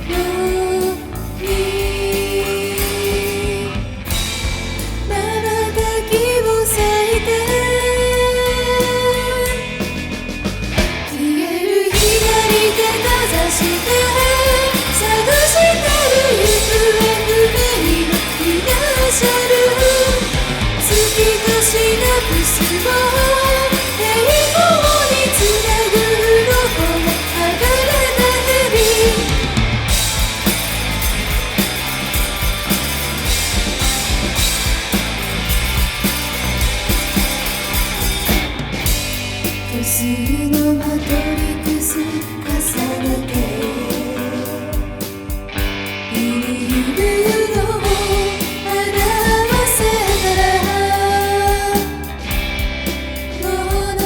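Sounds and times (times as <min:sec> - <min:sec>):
rock band playing: 0:00.0 - 0:06.2, 0:08.4 - 0:11.2, 0:11.9 - 0:54.0.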